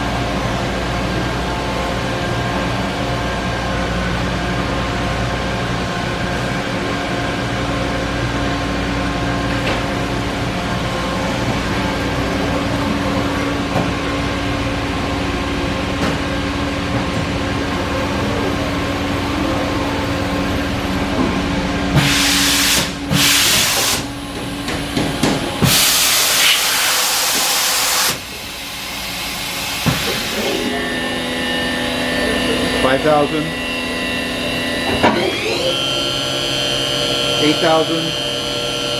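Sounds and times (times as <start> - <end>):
machining center humming: 0.0 - 38.9
hissing air bursts: 25.7 - 28.2.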